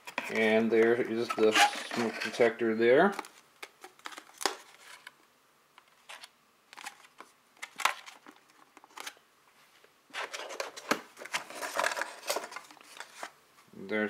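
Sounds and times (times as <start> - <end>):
packaging rustling and crinkling: 0.0 - 2.4, 3.1 - 5.2, 5.8 - 9.2, 10.1 - 13.4.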